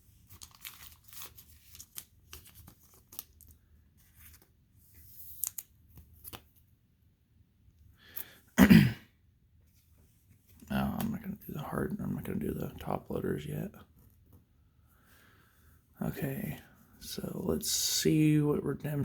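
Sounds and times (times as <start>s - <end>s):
plastic card sleeve rustling: 0.0s - 6.7s.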